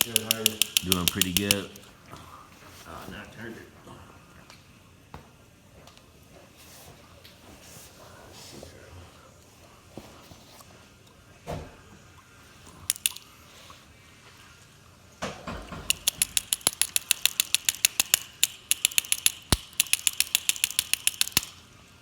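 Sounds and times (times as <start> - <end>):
sharp metallic tapping on lock: 0.0 - 1.9, 12.9 - 13.2, 15.6 - 21.6.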